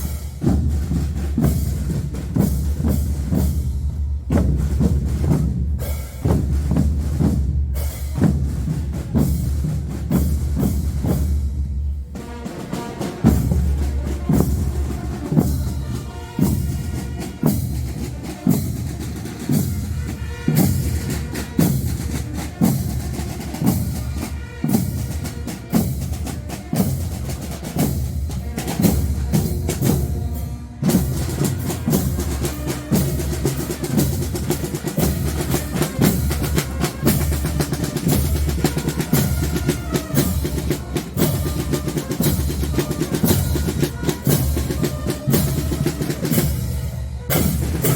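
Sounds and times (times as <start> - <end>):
marching band playing: 0.0 - 47.9
snare drum rolls: 12.2 - 47.9.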